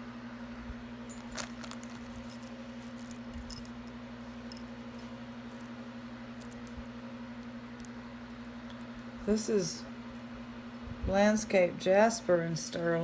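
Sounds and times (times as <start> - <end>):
low electrical hum: 0.0 - 13.0
metal jewelry clinking: 1.1 - 5.7, 6.3 - 6.8.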